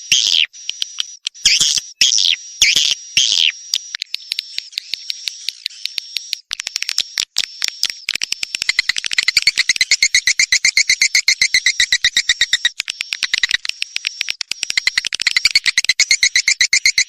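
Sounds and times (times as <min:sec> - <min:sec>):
buzzy high twittering calls: 0:00.0 - 0:17.0
bird clicks: 0:03.7 - 0:17.0.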